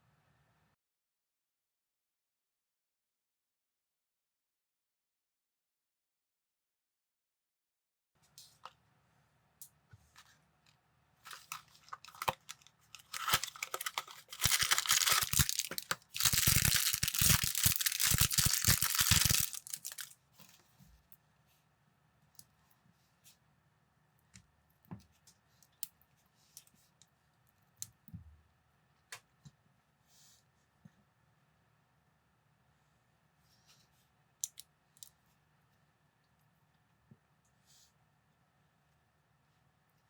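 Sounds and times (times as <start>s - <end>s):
plastic pieces clicking: 11.3s - 20.1s
plastic packaging rustling and tearing: 11.3s - 20.2s.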